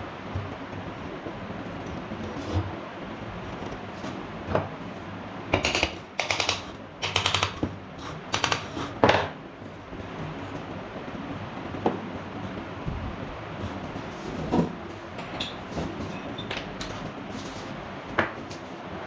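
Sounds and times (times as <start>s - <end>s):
metallic clicking of hand tools: 5.6s - 7.7s.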